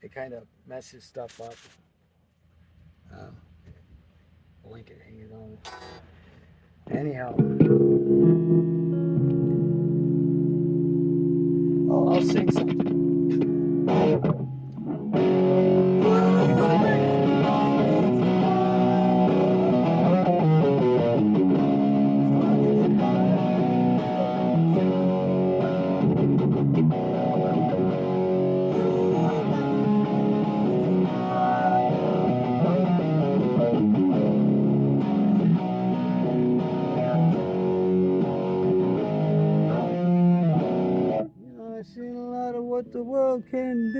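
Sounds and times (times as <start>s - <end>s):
guitar playing chords: 5.7s - 6.1s, 6.9s - 41.6s.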